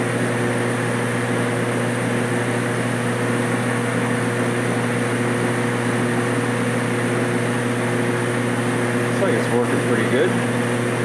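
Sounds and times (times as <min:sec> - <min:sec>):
metal lathe motor and gear hum: 0:00.0 - 0:11.0.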